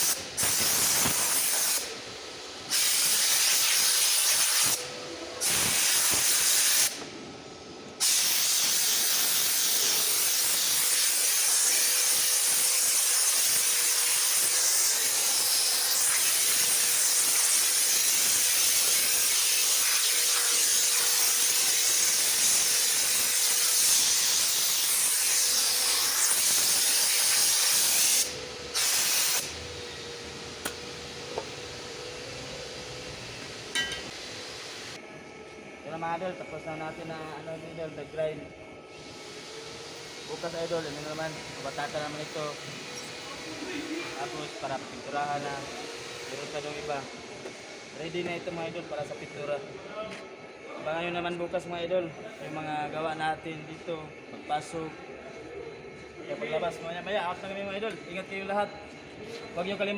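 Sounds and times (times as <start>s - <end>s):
power grinder grinding: 8.6s - 35.0s.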